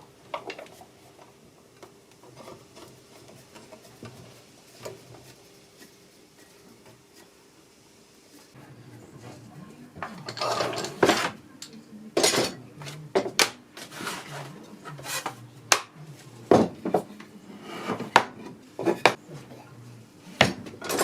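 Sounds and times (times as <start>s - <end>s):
scraping: 13.8s - 15.4s.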